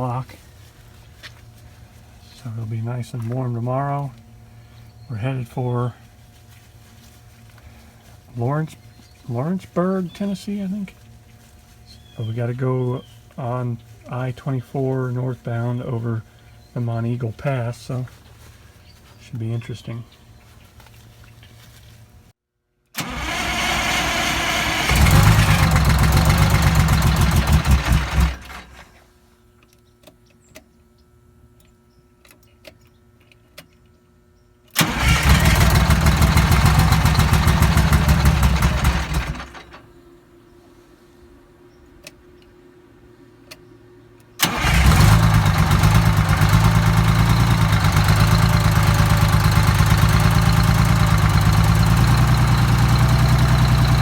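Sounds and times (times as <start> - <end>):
diesel engine starting and running: 0.0 - 0.4, 23.0 - 29.0, 34.8 - 40.0, 44.4 - 54.0.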